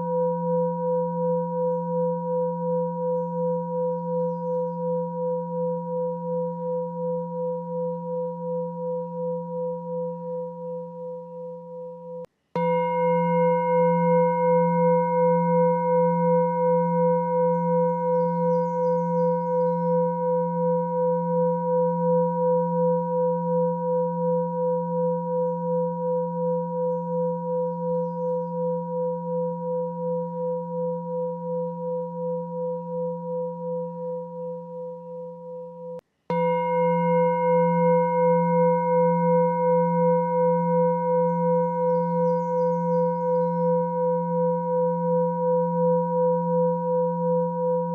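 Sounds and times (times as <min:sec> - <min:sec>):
bell-like ringing tone: 0:00.0 - 0:47.9.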